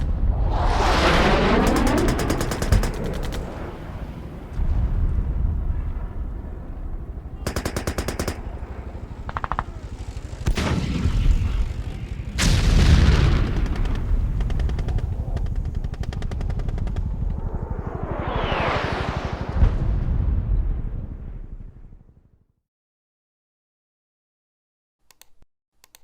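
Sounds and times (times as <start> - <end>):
heavy blasts: 0.0 - 21.9
continuous low rumble: 0.0 - 22.1
machine-gun and rifle fire: 1.6 - 3.6, 7.4 - 17.4.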